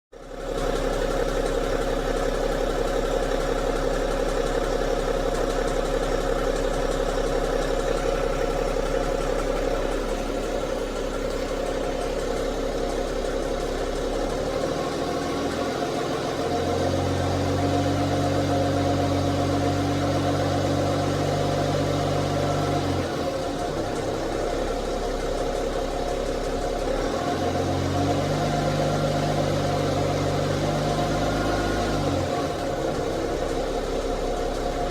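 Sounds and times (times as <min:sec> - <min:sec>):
diesel engine idling with ticking: 0:00.2 - 0:34.9
deep low hum: 0:05.1 - 0:15.5.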